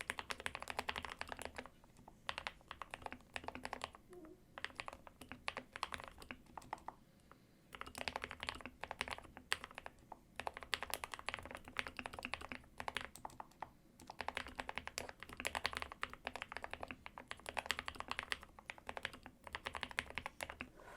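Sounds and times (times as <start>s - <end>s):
mechanical keyboard typing: 0.0s - 4.0s, 4.6s - 7.0s, 7.7s - 20.7s.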